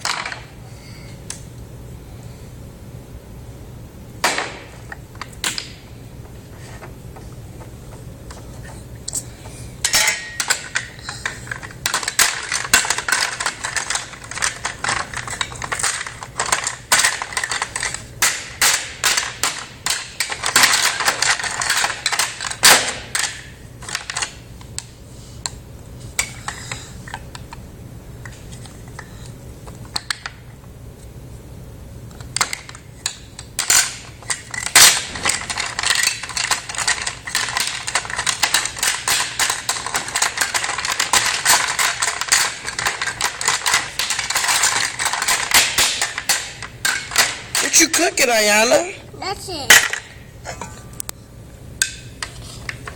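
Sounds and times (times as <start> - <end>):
plastic toys clattering and clicking: 0.0 - 0.5, 7.9 - 24.9, 32.1 - 50.2.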